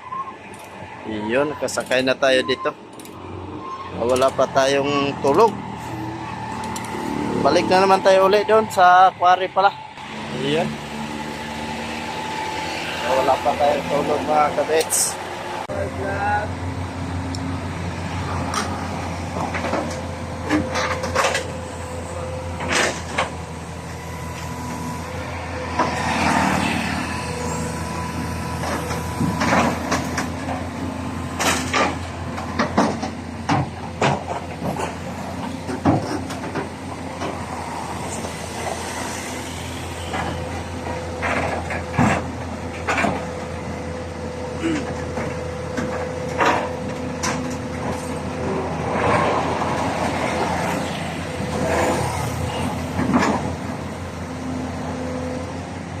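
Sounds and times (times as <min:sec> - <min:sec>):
truck engine droning: 0:00.0 - 0:56.0
rattles and knocks: 0:31.4 - 0:37.4.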